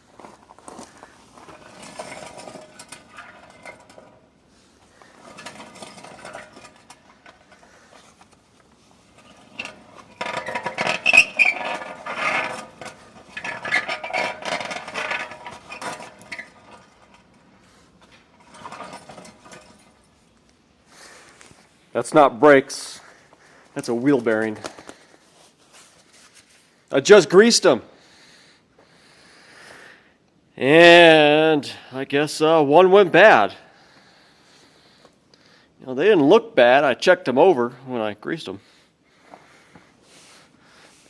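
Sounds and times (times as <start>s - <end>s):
wheel bearing grinding: 0.0s - 20.2s.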